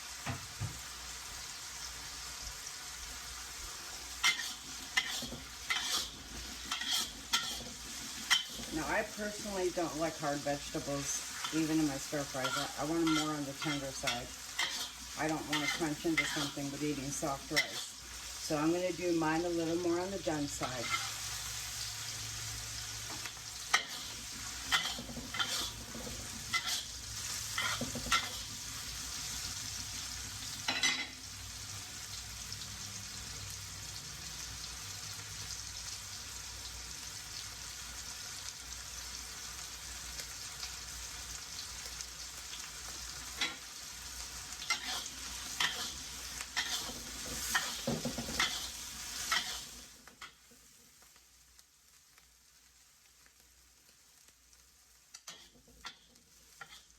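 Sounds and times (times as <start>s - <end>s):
vegetables sizzling in a pan: 0.0s - 56.9s
utensil scraping and knocking pan: 4.2s - 8.7s.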